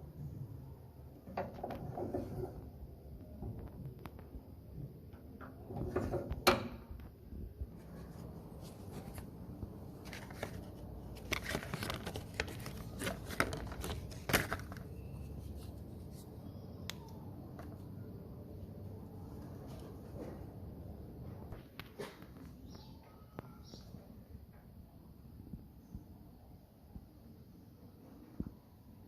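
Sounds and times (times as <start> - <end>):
clicks and knocks of objects handled: 10.0 - 14.9.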